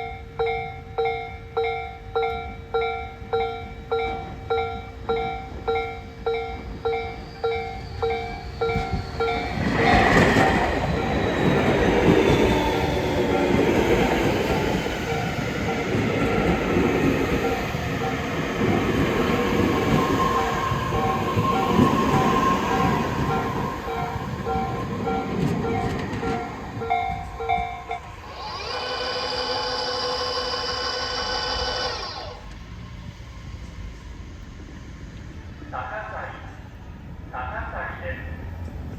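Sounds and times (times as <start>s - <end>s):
electric train rolling and braking: 0.0s - 35.7s
train wheel clatter and squeal: 3.9s - 32.8s.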